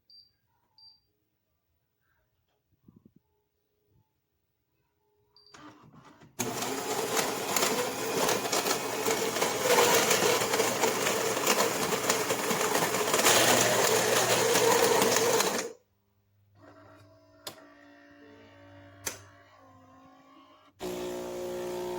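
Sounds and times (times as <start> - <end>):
espresso machine rattling hum: 20.8 - 21.9.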